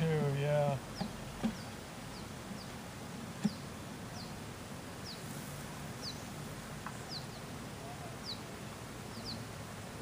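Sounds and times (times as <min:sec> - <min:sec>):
bird chirping: 0:00.0 - 0:02.8, 0:03.4 - 0:04.4, 0:05.0 - 0:05.3, 0:05.9 - 0:09.6.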